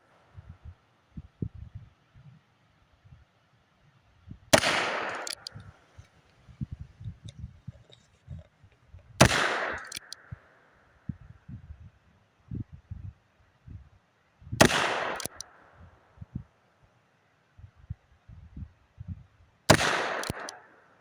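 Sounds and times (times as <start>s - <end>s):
wind buffeting microphone: 0.3s - 2.4s, 4.2s - 10.4s, 11.0s - 14.6s, 17.6s - 19.4s.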